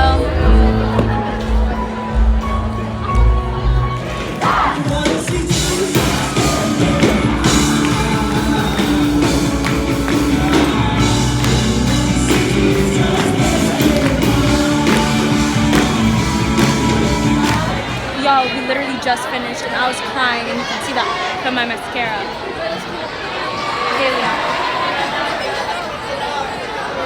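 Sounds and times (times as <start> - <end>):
band music with singing: 0.0 - 18.4
drums: 0.0 - 18.4.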